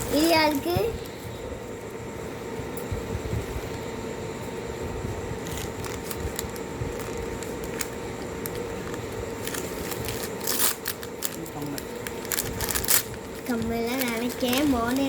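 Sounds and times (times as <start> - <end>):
steady low hum: 0.0 - 15.0
paper rustling: 5.4 - 15.0.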